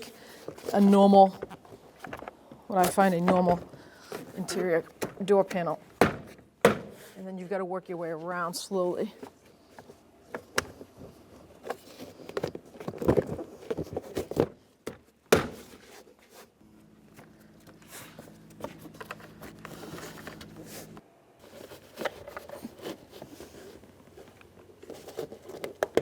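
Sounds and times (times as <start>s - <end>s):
steady low hum: 16.5s - 25.5s.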